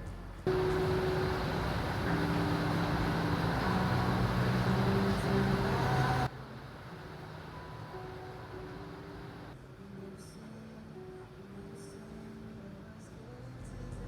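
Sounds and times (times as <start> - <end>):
soft background music: 0.0 - 14.0
steady rushing noise: 0.5 - 9.6.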